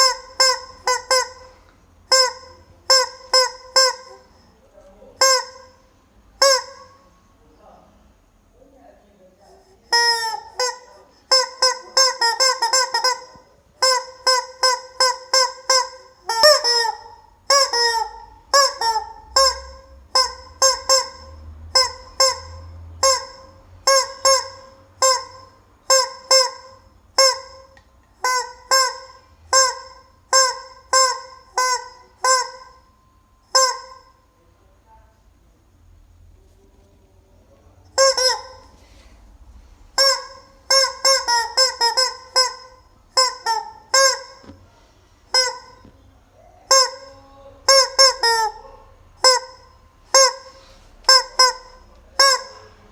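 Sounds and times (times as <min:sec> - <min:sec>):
rubber chicken squawking: 0:00.0 - 0:04.4, 0:38.0 - 0:38.8, 0:40.0 - 0:44.5, 0:45.3 - 0:52.9.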